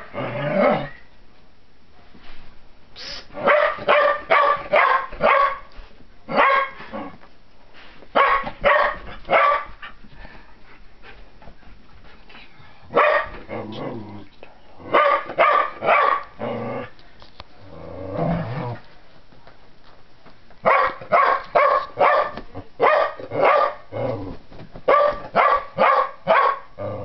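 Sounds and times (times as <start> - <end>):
dog barking: 3.4 - 5.7, 6.3 - 6.8, 8.2 - 9.7, 12.9 - 13.4, 14.9 - 16.3, 20.6 - 23.8, 24.9 - 26.7.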